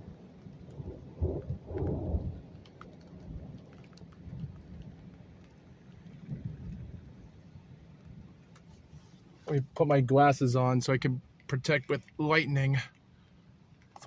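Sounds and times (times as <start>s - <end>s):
thunder rumbling: 0.0s - 8.3s
raindrops ticking: 0.0s - 8.8s, 9.5s - 14.0s.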